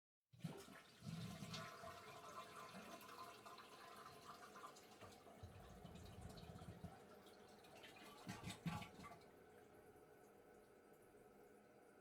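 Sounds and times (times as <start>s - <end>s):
toilet flushing: 0.4s - 9.9s.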